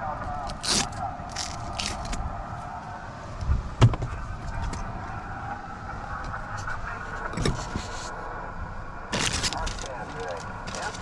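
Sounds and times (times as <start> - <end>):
car rumble: 0.0 - 11.0
radio static hiss: 4.0 - 11.0.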